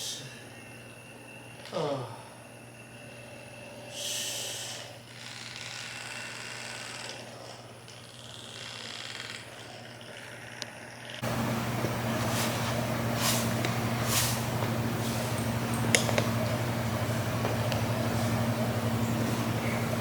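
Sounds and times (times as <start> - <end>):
electric massager humming: 0.4 - 20.0
rubbing noises: 11.2 - 20.0.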